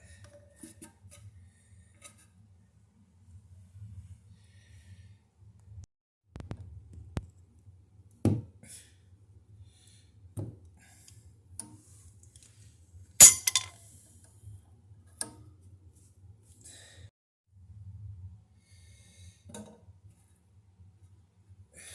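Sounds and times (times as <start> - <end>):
hard objects knocking and clinking: 13.2 - 13.7.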